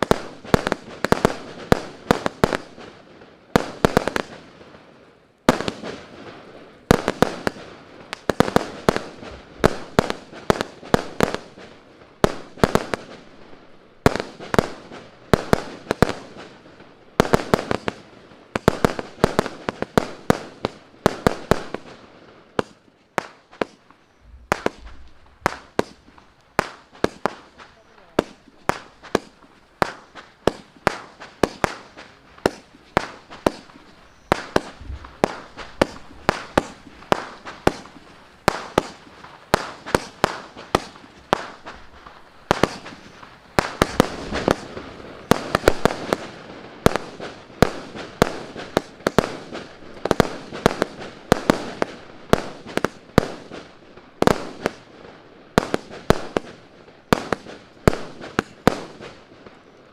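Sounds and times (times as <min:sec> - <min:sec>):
firework cake bangs: 0:22.6 - 0:53.6
firework hissing: 0:23.5 - 0:49.4.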